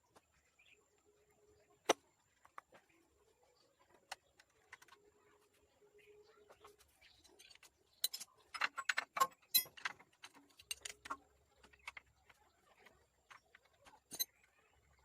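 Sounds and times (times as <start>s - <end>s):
metal tools clinking: 7.4s - 11.2s, 14.1s - 14.4s.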